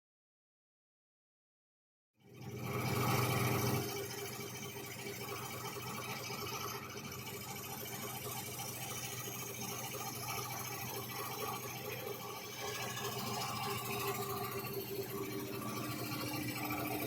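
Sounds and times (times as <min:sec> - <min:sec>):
electric scroll saw cutting: 0:10.6 - 0:17.0.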